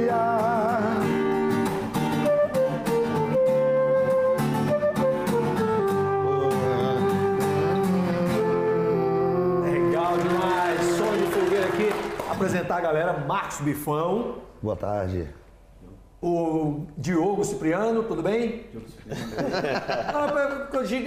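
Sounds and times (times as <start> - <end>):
acoustic guitar strumming: 0.0 - 12.3
live band music: 1.3 - 12.4.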